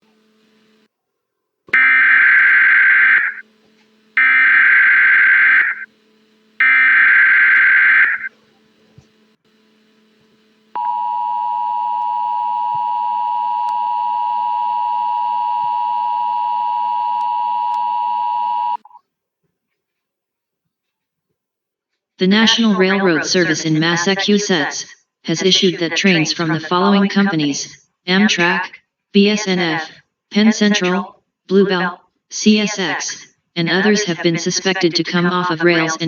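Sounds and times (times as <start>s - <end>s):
two-tone alarm: 1.8s - 19.0s.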